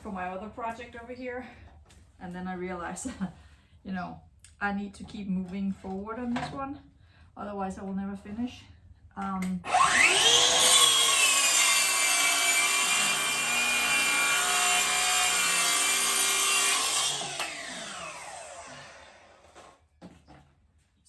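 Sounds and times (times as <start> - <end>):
circular saw cutting wood: 9.7 - 19.8.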